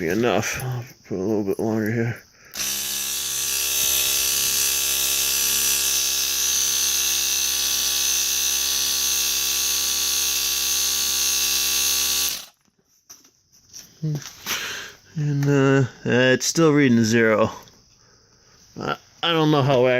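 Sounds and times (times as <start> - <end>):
air compressor buzzing whine: 2.5 - 12.7.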